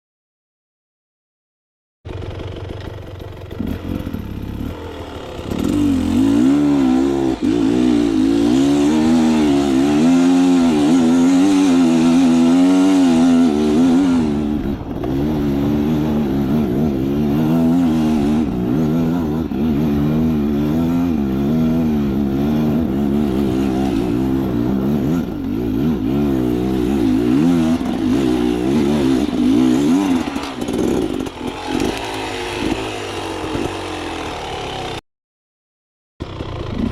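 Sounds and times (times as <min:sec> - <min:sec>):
motorcycle engine revving: 0:02.1 - 0:35.0, 0:36.2 - 0:36.9.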